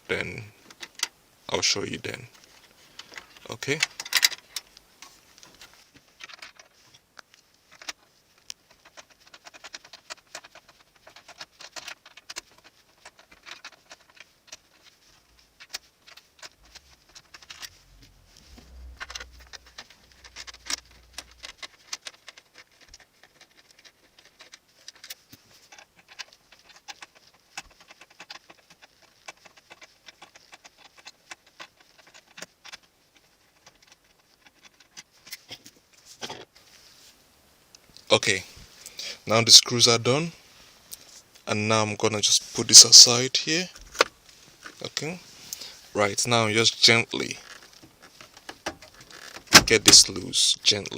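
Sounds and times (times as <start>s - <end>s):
low rumble: 17.6s - 21.5s.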